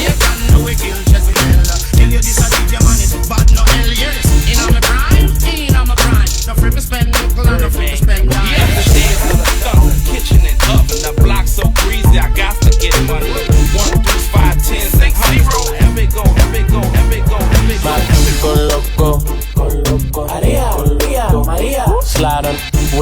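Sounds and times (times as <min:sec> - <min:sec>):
hip hop music with heavy bass: 0:00.0 - 0:23.0.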